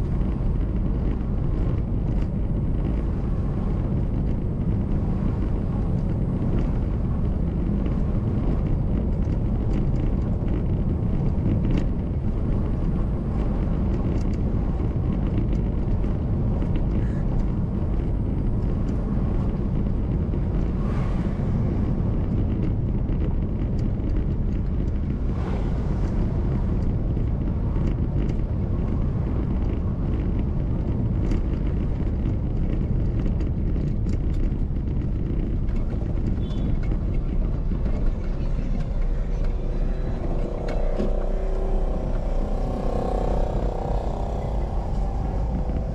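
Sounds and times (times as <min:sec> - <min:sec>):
car engine and tyre rumble: 0:00.0 - 0:45.9.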